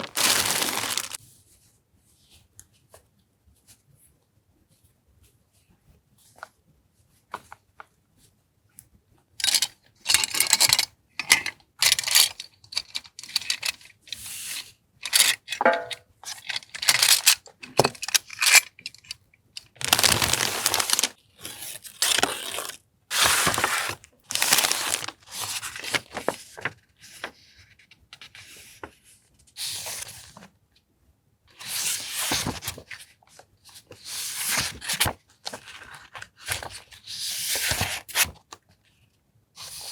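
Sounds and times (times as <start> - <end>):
packaging tearing and rustling: 0.0 - 1.2, 19.6 - 26.6.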